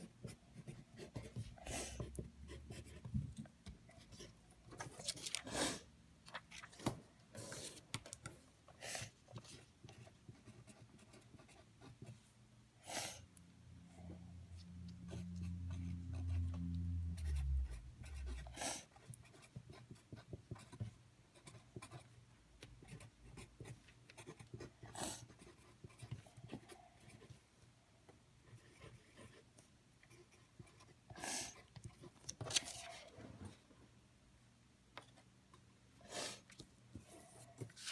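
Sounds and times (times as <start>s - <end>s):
low hum: 13.7s - 18.6s.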